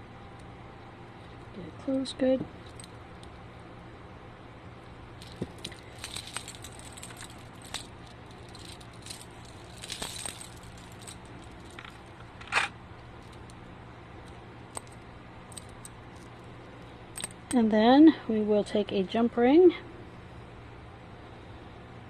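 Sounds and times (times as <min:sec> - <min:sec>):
faint steady hum: 0:00.0 - 0:22.0
metal chain jingling and clinking: 0:05.2 - 0:12.0, 0:14.8 - 0:16.4, 0:17.1 - 0:17.5.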